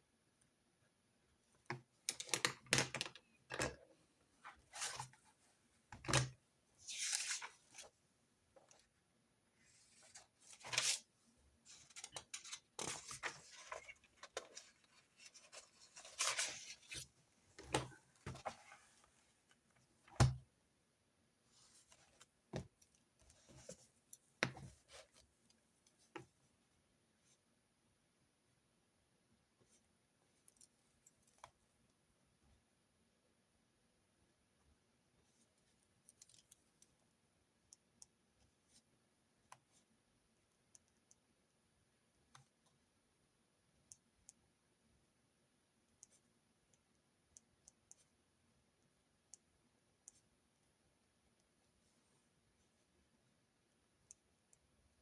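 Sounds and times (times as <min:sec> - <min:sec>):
paper rustling: 0:06.8 - 0:07.9, 0:11.7 - 0:17.1.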